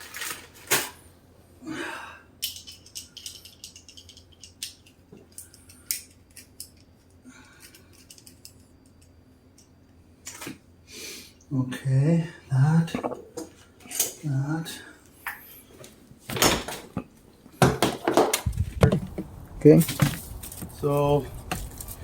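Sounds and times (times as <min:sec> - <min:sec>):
metal parts clicking and rattling: 0:00.0 - 0:01.0, 0:02.4 - 0:10.5.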